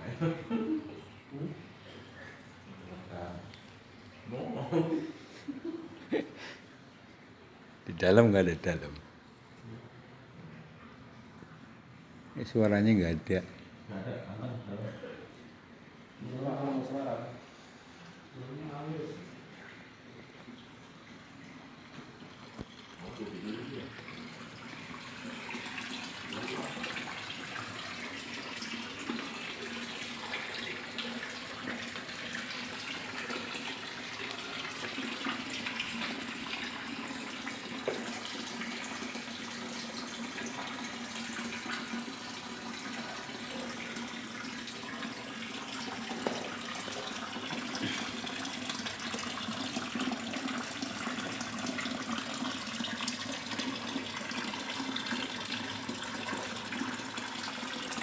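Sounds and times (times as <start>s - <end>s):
running water rushing: 21.5s - 58.0s.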